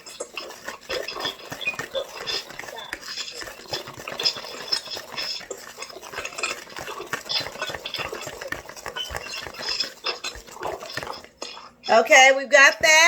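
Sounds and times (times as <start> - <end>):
utensil clinking against bowl: 0.0 - 12.0
whisk stirring in mixing bowl: 0.0 - 13.0.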